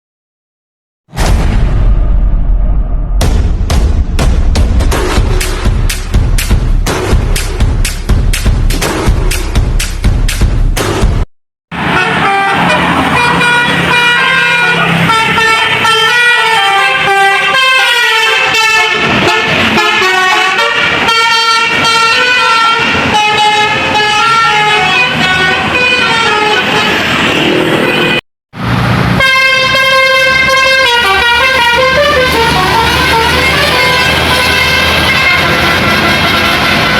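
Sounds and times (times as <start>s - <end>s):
musical air horn melodies: 11.8s - 28.2s, 29.2s - 36.9s.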